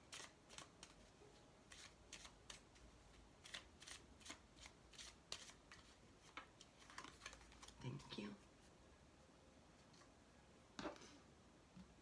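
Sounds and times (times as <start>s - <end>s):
cards being shuffled: 0.1s - 1.1s, 1.7s - 2.6s, 3.4s - 7.8s.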